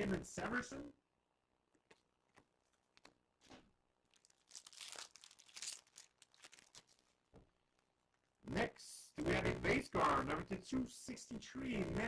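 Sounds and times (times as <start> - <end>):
wrapper crinkling and tearing: 2.6 - 7.3.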